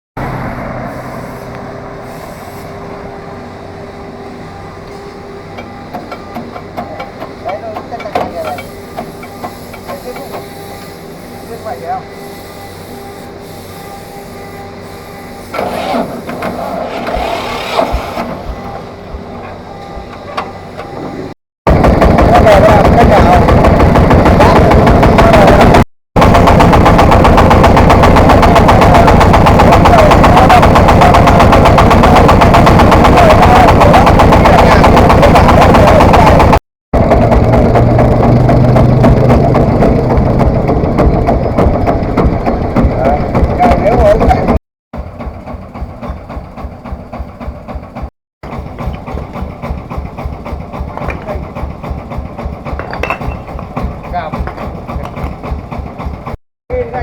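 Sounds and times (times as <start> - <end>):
tractor engine running: 0.2 - 57.0.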